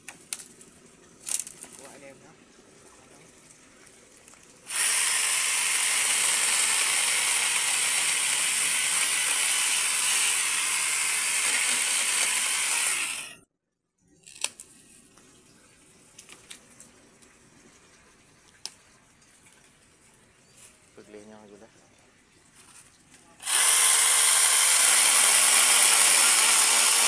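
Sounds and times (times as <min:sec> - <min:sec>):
mini chainsaw cutting bamboo: 0:04.7 - 0:13.4, 0:23.4 - 0:27.0.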